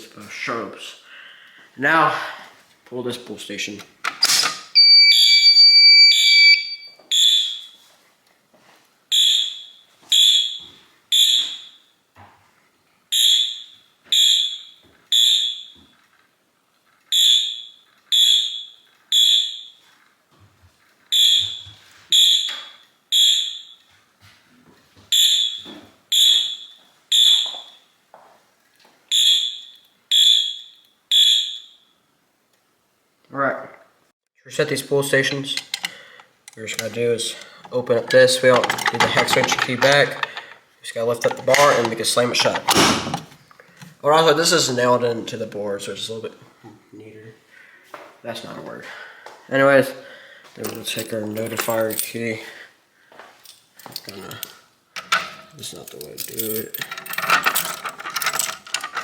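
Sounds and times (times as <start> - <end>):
fire alarm horn blasts: 4.8 - 7.8, 9.1 - 11.9, 13.1 - 15.8, 17.1 - 19.8, 21.1 - 23.9, 25.1 - 27.9, 29.1 - 32.0.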